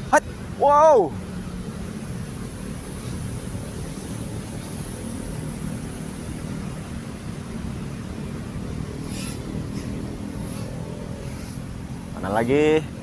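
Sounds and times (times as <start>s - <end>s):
quadcopter motors buzzing: 8.1s - 12.7s.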